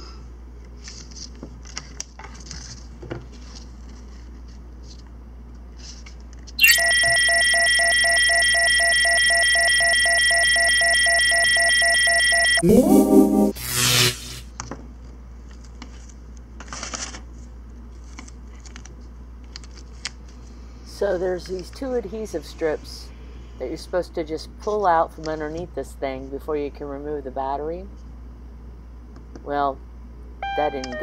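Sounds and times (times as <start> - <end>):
electronic alarm tone: 6.6 - 14.2, 30.4 - 31.0
rising horn blast: 12.6 - 13.6.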